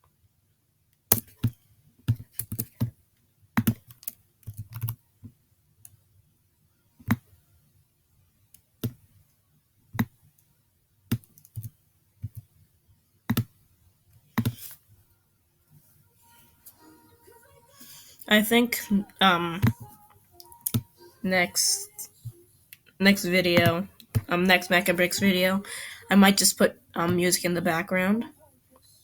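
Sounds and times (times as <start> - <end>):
keyboard and mouse clicks: 1.1 - 2.9, 3.6 - 5.0, 11.1 - 12.5, 13.3 - 13.5, 14.4 - 14.8, 19.6 - 21.0.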